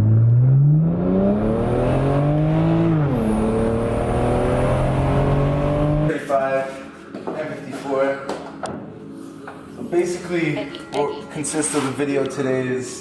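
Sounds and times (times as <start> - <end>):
car engine accelerating: 0.0 - 6.1.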